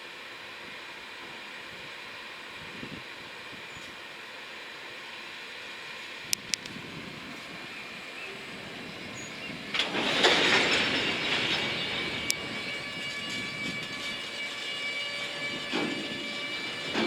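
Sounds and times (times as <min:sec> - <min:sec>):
train wheels on rails: 0:08.3 - 0:17.0
wheel squeal: 0:08.3 - 0:17.0.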